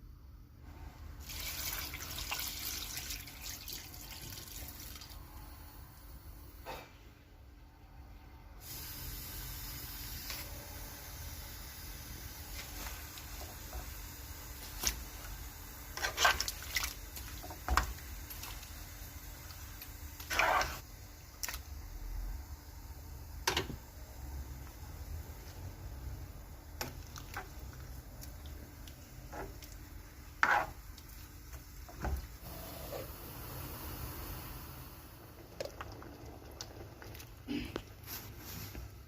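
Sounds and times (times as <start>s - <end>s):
utensil scraping cookware: 16.0s - 16.5s, 20.2s - 20.8s, 30.4s - 30.8s.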